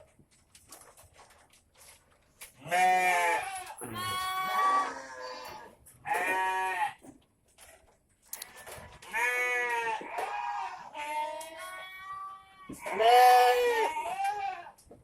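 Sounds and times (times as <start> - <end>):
goats bleating: 2.6 - 7.0, 8.6 - 14.8.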